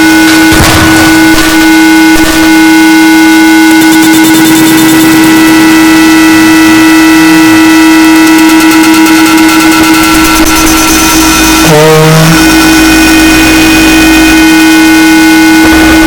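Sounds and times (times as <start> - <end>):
fast flickering stutter: 0.0 - 5.6, 8.1 - 16.0
distorted electronic noise: 0.0 - 16.0
low drone: 9.9 - 16.0
thin high tones: 10.5 - 13.4.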